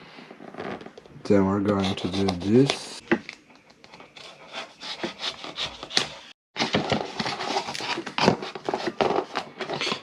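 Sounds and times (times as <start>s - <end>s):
knife sawing through cardboard: 1.7s - 2.9s, 4.1s - 6.4s.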